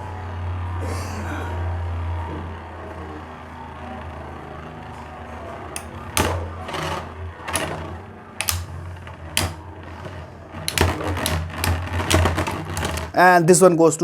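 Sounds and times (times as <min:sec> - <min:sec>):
spinning tops clacking together: 0:05.8 - 0:13.2
spinning tops whirring: 0:05.8 - 0:13.3.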